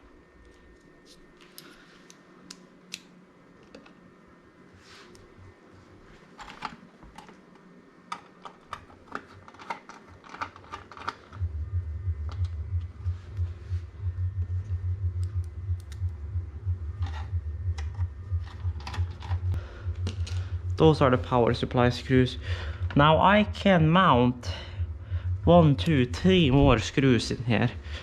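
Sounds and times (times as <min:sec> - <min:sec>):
loud low fluttering hum: 0:11.3 - 0:28.0.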